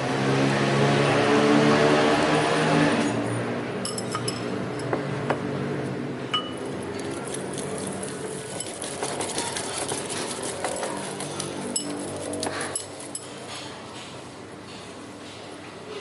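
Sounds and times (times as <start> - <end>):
glassware clinking: 3.8 - 5.0, 6.3 - 6.7
short ringing pings: 6.4 - 6.6.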